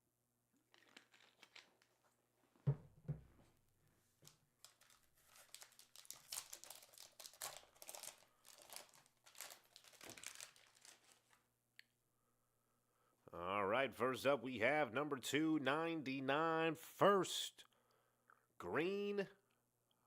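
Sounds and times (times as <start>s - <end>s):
wrappers crinkling and tearing: 0.7s - 2.1s, 4.2s - 11.4s.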